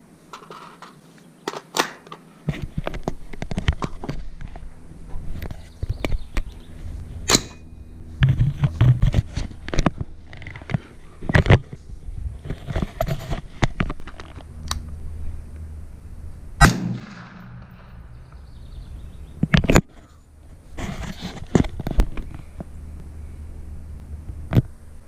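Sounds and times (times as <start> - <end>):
suppressed rifle shots: 16.6 - 18.1
gunshot echo: 16.6 - 18.2.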